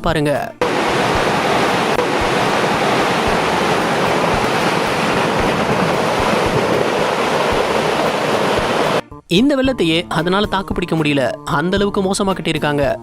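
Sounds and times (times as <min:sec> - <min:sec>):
fast-flowing floodwater rushing: 0:00.6 - 0:09.0.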